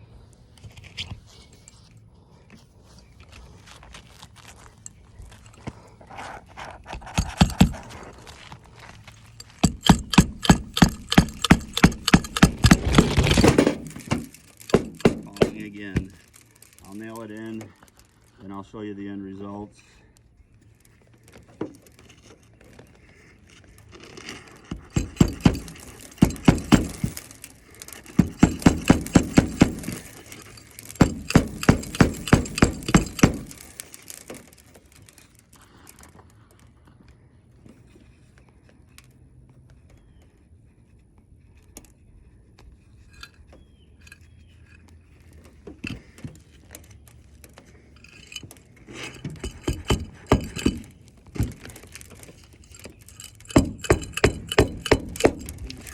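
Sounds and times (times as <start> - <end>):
hammer striking nails into shingle: 7.0 - 7.9, 9.4 - 16.2, 24.7 - 27.3, 28.1 - 34.4, 49.2 - 51.8, 53.2 - 55.9.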